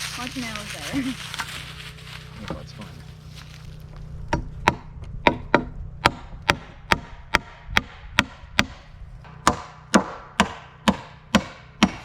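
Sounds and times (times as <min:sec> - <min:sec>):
hammer driving nail into wood: 0:04.7 - 0:12.0.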